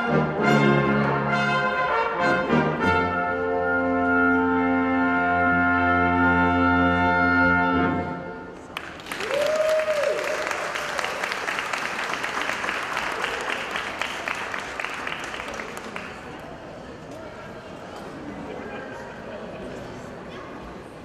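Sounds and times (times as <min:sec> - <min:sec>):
brass ensemble chord: 0:00.0 - 0:08.5
audience applause: 0:08.8 - 0:16.6
person cheering: 0:09.2 - 0:10.6.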